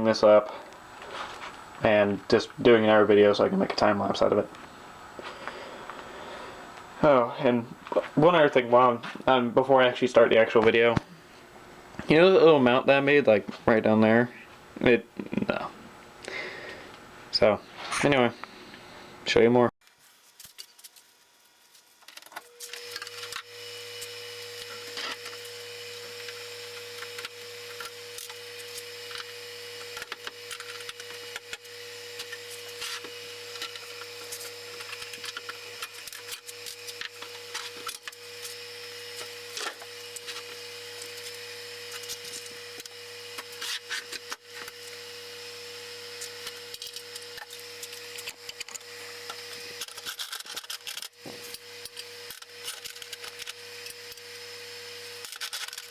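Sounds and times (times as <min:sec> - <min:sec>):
electric motor humming: 0:21.3 - 0:55.9.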